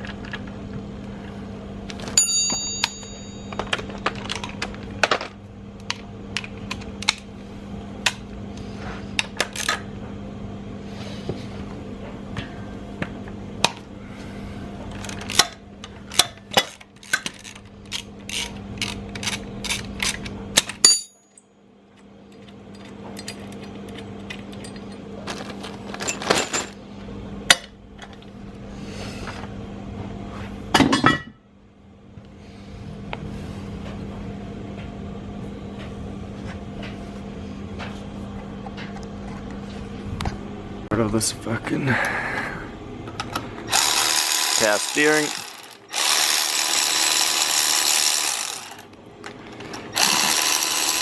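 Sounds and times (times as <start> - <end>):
steady low hum: 0.0 - 51.0
tools clinking against metal engine: 2.1 - 3.9, 15.0 - 21.5.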